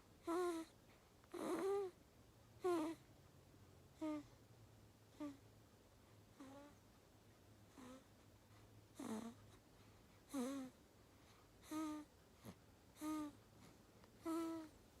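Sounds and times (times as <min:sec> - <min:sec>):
baby snoring squeakily: 0:01.3 - 0:01.9, 0:02.6 - 0:03.0, 0:07.8 - 0:08.0, 0:09.0 - 0:09.4, 0:10.3 - 0:10.7, 0:14.2 - 0:14.7.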